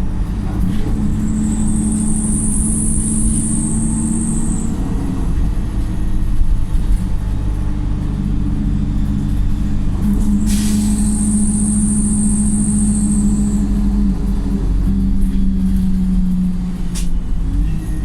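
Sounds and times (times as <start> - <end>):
steady high whine: 0.0 - 6.4
bus diesel engine running: 0.0 - 18.0.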